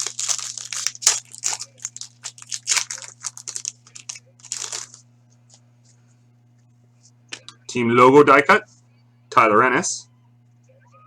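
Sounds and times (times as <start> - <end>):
foil wrapper crinkling: 0.0 - 5.1
faint electrical hum: 0.0 - 11.0.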